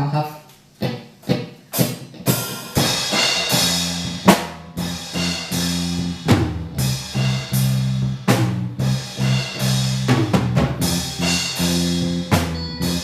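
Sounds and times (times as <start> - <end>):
rock band playing: 2.3 - 13.0
drumstick count-in: 3.1 - 13.0
crash cymbal hits: 10.8 - 13.0.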